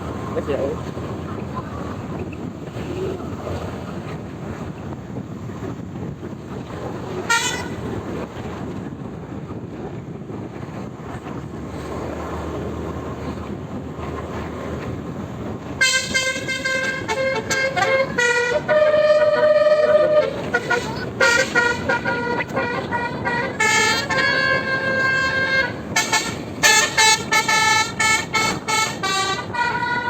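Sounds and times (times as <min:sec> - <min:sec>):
engine and road noise: 0:00.0 - 0:30.0
bus musical horn: 0:04.5 - 0:11.0, 0:11.9 - 0:30.0.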